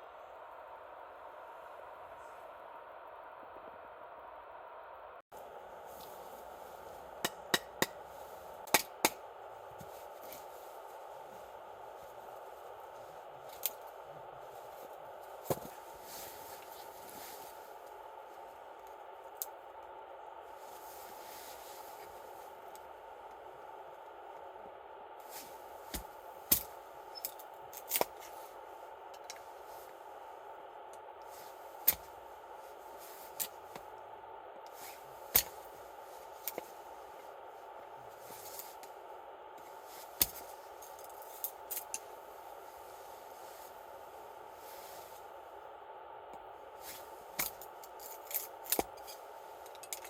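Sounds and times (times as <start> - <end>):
steady fire hiss: 5.3 - 50.0
campfire crackling and popping: 6.8 - 19.8, 25.2 - 29.9.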